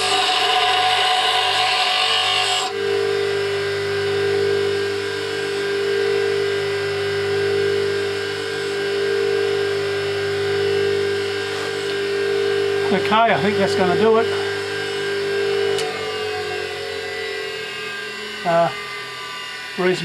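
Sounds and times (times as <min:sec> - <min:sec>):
bench grinder running free: 0:00.0 - 0:03.7
bench grinder grinding metal: 0:00.0 - 0:20.0.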